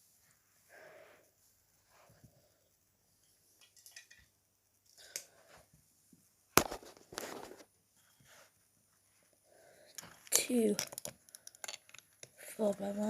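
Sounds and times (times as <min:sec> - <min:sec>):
lego bricks clicking and clattering: 0:03.6 - 0:04.3, 0:10.0 - 0:12.9.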